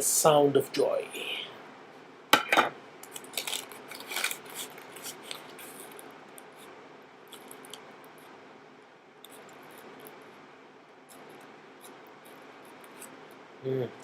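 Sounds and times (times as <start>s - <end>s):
crinkling rustles: 3.0s - 6.6s.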